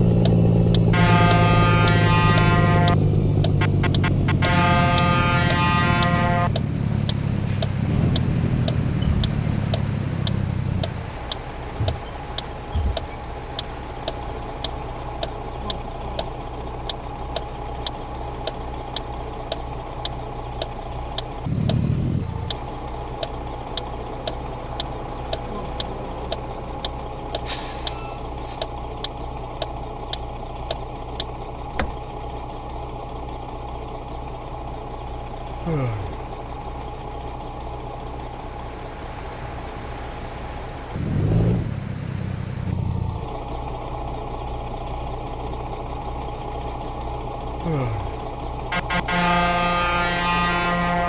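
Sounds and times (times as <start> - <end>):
truck engine running: 0.0 - 51.0
regular ticking: 0.1 - 21.8.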